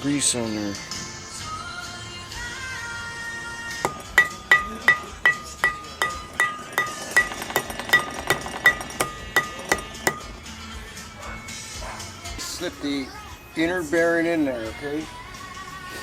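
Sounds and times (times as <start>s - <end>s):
hammer tapping on steel: 3.8s - 10.4s.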